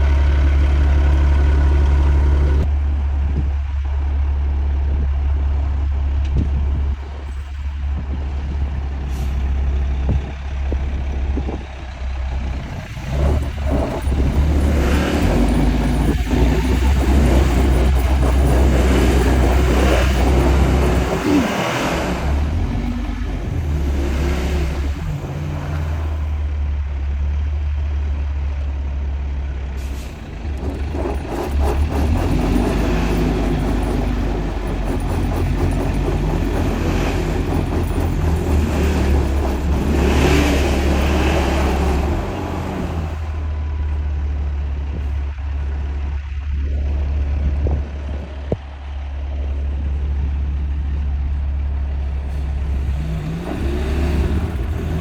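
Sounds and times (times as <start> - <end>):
truck diesel engines running: 0.0 - 55.0
air brake hiss: 9.1 - 9.6, 29.8 - 30.3.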